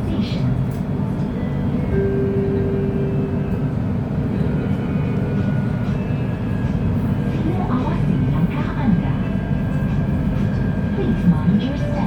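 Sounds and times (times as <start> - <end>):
train rumble from on board: 0.0 - 12.0.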